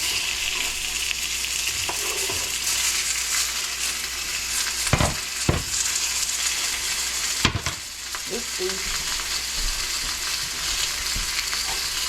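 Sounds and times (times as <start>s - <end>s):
meat sizzling in a pan: 0.0s - 12.0s
knocks against a pan: 4.9s - 5.8s, 7.4s - 7.8s.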